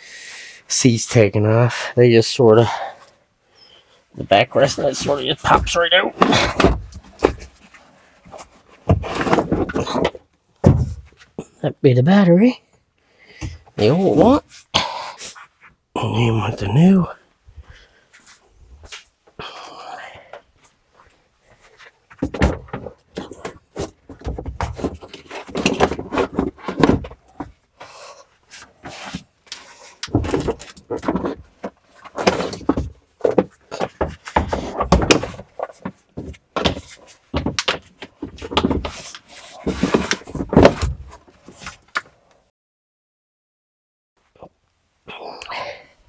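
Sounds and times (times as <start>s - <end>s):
battery clunking and scraping: 4.6s - 11.3s, 21.6s - 42.2s.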